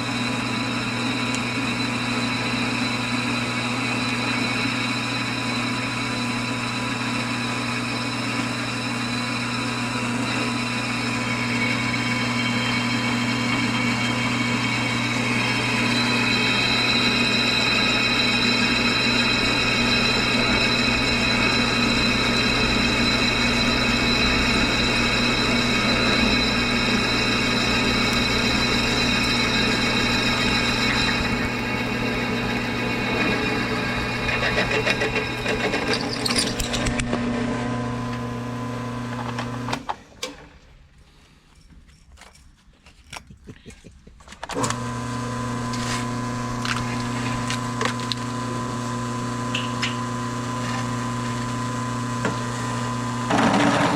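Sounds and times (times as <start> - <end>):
high whine: 0.0 - 38.3.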